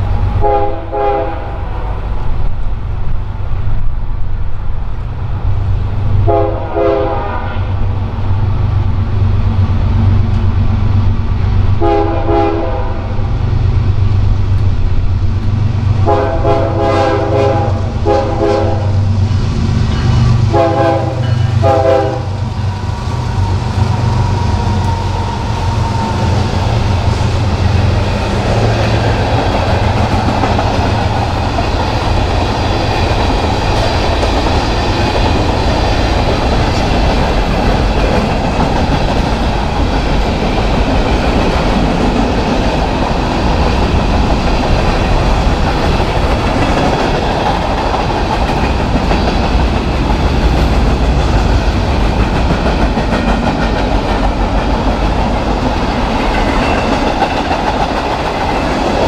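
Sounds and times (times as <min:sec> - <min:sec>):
train low rumble: 0:00.0 - 0:59.0
train wheels clattering over rails: 0:13.2 - 0:59.0.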